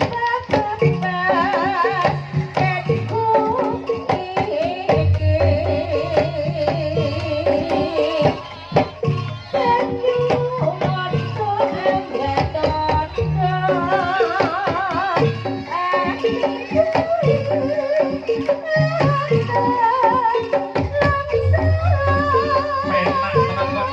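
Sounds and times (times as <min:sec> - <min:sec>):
hand drums beating fast: 0:00.0 - 0:23.9
wavering melody line: 0:04.9 - 0:08.0, 0:20.8 - 0:23.9
low pitched notes: 0:21.2 - 0:22.9.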